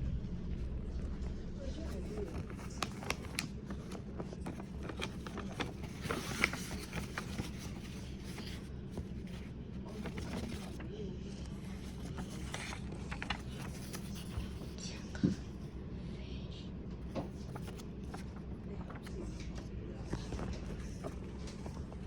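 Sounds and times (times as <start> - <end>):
steady low hum: 0.0 - 22.0
objects being handled: 1.9 - 10.8.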